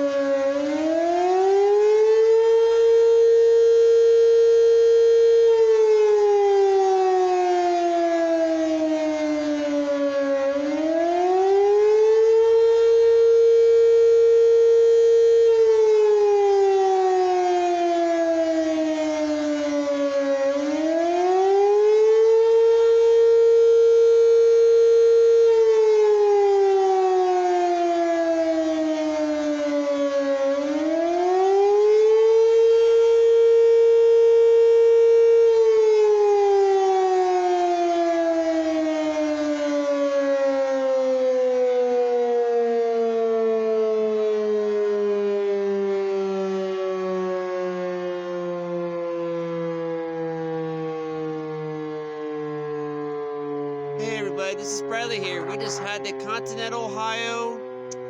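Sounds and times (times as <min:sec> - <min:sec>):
emergency siren wailing: 0:00.0 - 0:29.4.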